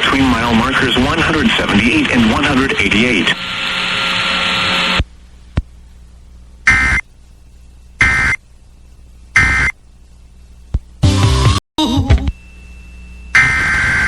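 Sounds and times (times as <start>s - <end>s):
buzzing data tone bursts: 6.6s - 7.1s, 8.0s - 8.4s, 9.4s - 9.8s, 12.2s - 14.0s.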